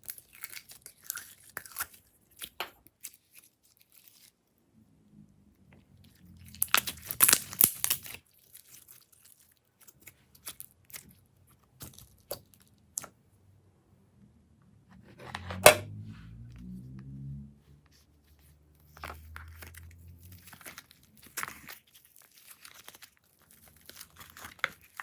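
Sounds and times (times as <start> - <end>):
slime crackling and popping: 6.5 - 11.1, 19.0 - 25.0.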